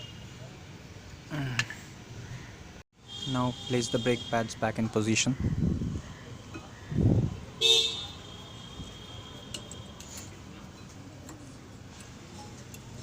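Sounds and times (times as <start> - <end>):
light metal ticks: 10.8 - 13.0.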